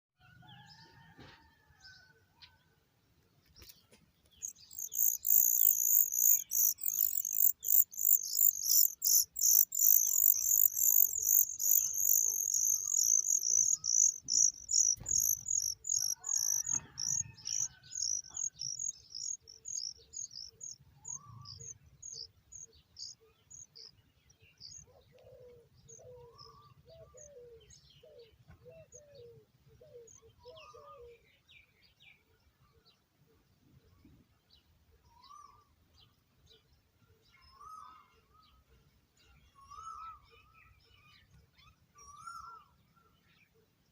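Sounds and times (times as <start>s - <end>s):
nestlings begging calls: 4.4s - 20.3s.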